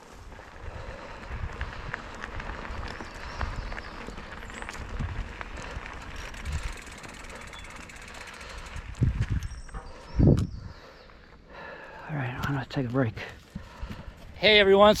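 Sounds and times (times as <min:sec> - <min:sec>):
bike rattling over bumps: 0:00.0 - 0:10.5
mountain bike rolling on dirt: 0:00.0 - 0:15.0.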